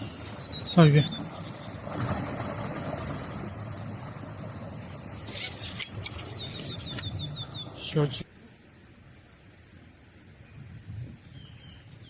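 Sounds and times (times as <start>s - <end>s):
water splashing and rustling: 0.0s - 12.0s
steady low rumble: 0.4s - 5.4s.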